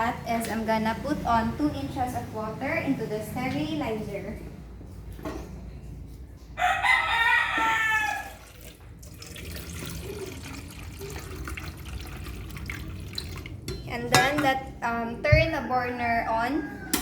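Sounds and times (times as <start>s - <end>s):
rooster crowing: 6.6s - 8.6s, 15.6s - 17.0s
water pouring into bottle: 8.3s - 13.6s.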